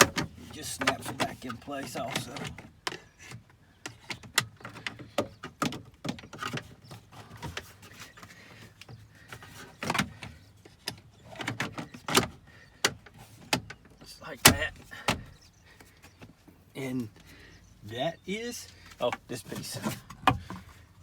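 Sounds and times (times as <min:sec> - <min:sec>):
plastic door clicking and snapping: 0:14.4 - 0:15.4.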